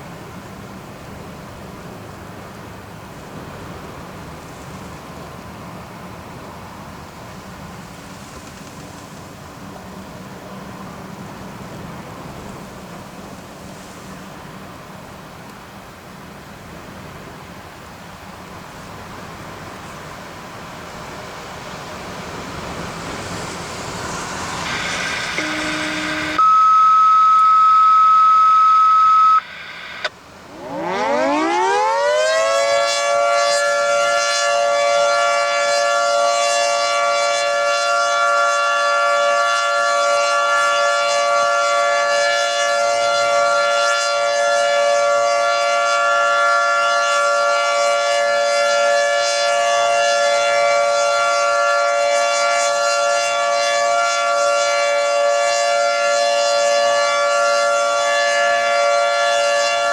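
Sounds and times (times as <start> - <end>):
outdoor warning siren wailing: 20.8 - 59.9
loud steady beep tone: 24.3 - 31.3.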